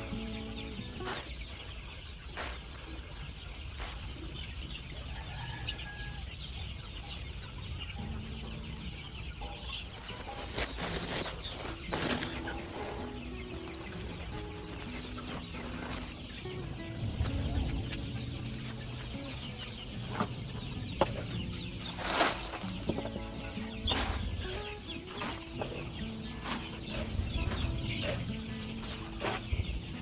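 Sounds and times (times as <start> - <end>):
chickens clucking: 0.0 - 30.0.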